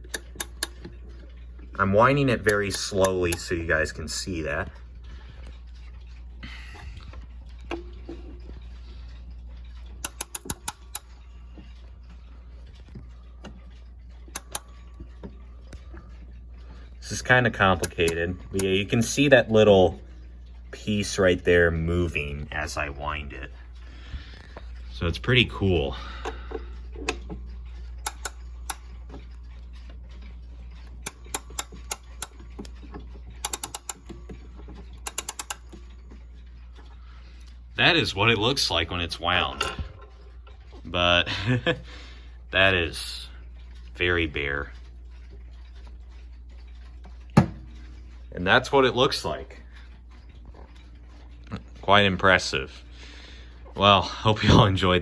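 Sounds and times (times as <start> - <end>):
clock winding ratchet clicks: 0.0 - 53.8
steady low hum: 0.0 - 55.0.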